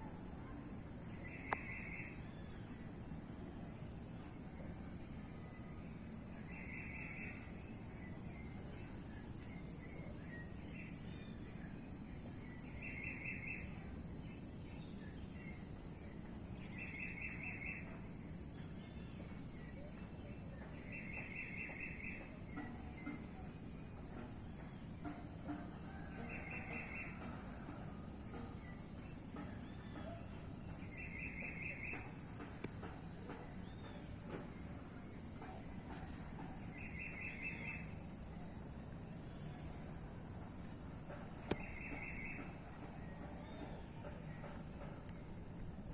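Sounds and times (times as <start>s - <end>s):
high insect buzz: 0.0s - 43.9s
faint bird chirps: 0.4s - 2.8s, 41.4s - 45.4s.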